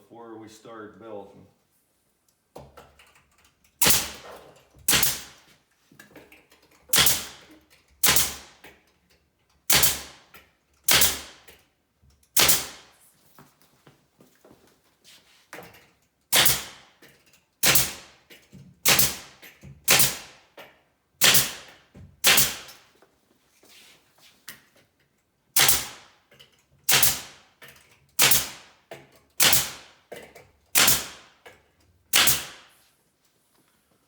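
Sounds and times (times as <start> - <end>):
nail gun shots: 3.8 - 5.4, 6.9 - 8.6, 9.7 - 11.6, 12.4 - 12.9, 16.3 - 17.0, 17.6 - 20.6, 21.2 - 22.8, 25.6 - 26.2, 26.9 - 27.6, 28.2 - 30.1, 30.7 - 31.4, 32.1 - 32.7.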